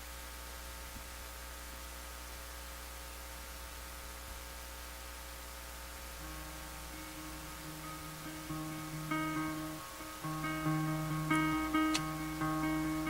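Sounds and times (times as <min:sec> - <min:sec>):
constant hiss: 0:00.0 - 0:13.0
electrical hum: 0:00.0 - 0:13.0
faint held notes: 0:06.2 - 0:13.0.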